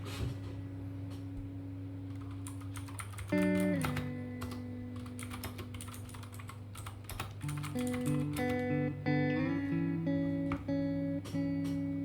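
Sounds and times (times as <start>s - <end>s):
guitar background music: 0.1s - 12.0s
keyboard key clicks: 2.1s - 8.6s.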